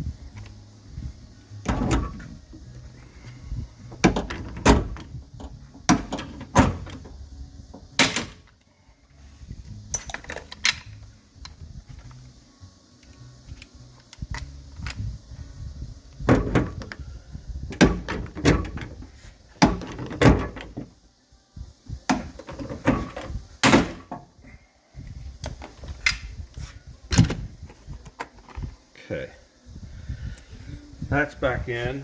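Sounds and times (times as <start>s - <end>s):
metallic clunks and knocks: 1.6s - 2.3s, 3.9s - 8.5s, 16.2s - 17.0s, 17.7s - 19.0s, 19.6s - 20.9s.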